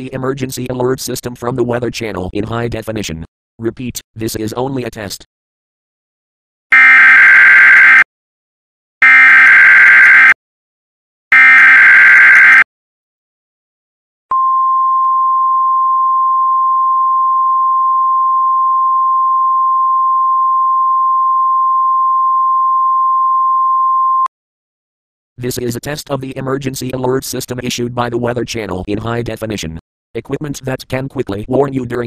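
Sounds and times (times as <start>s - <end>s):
screeching digital data tones: 6.8s - 8.0s, 9.0s - 10.4s, 11.4s - 12.6s.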